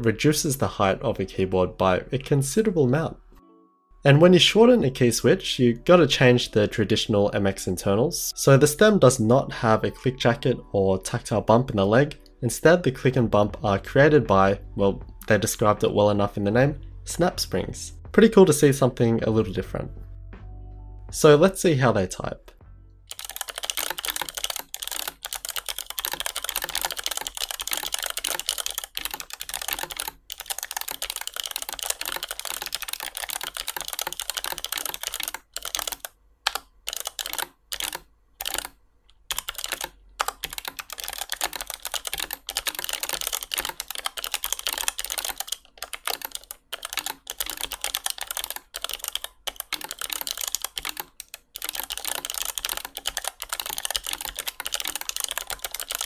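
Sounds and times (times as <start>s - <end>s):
clicky keyboard typing: 23.1s - 56.0s.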